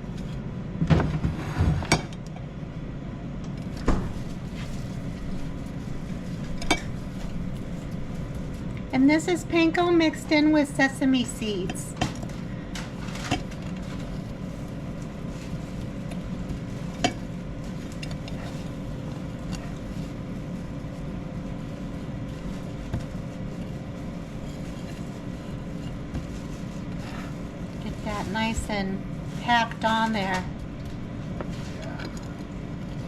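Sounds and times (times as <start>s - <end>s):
steady hum: 0.0s - 33.0s.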